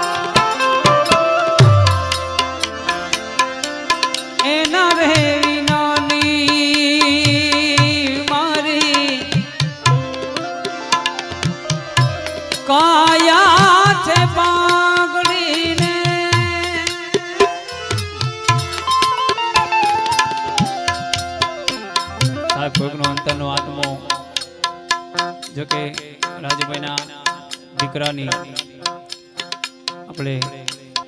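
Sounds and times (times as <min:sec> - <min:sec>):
melody with strong vibrato: 0:00.0 - 0:08.1, 0:16.6 - 0:25.7
harmonium held notes: 0:00.0 - 0:31.0
tabla rhythm: 0:00.0 - 0:31.0.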